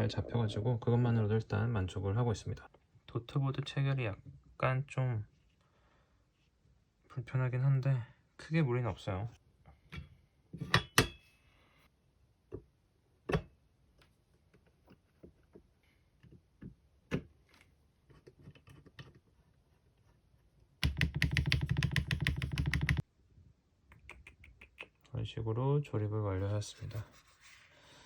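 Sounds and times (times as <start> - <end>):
mechanical keyboard clacks and typing: 20.8 - 23.0.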